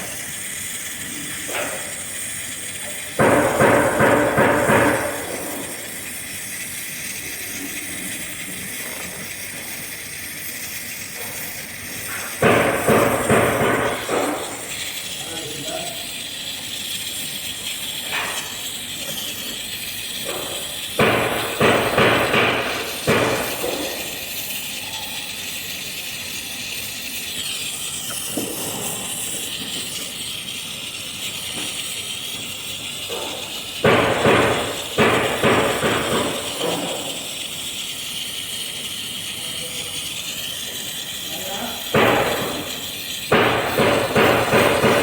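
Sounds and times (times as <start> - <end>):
torch hissing: 0.0 - 45.0
sharp metal knocks: 3.2 - 5.8, 12.2 - 14.7, 20.2 - 24.0, 33.1 - 37.2, 42.0 - 45.0.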